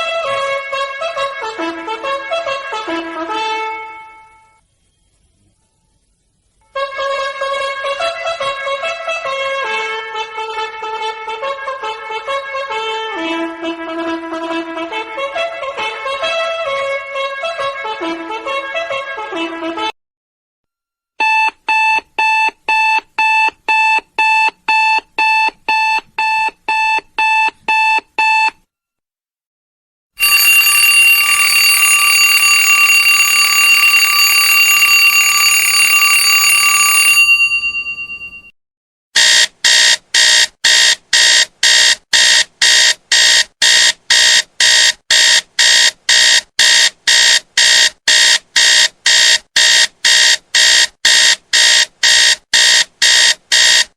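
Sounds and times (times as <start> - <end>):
alarm clock beeping: 30.2 - 38.5, 39.2 - 53.8
alarm clock ringing: 30.2 - 38.5
shrill alarm beeping: 30.2 - 38.5.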